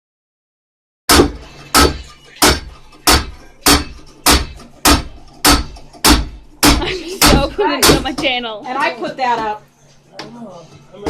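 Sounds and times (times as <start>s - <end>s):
hammer banging on wood: 1.1s - 8.4s.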